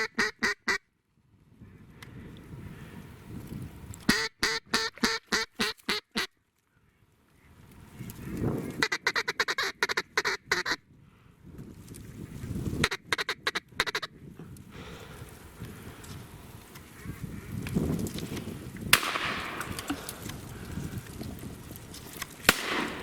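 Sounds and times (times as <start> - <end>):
duck quacking: 0.0 - 0.8, 4.1 - 6.3, 8.8 - 10.8.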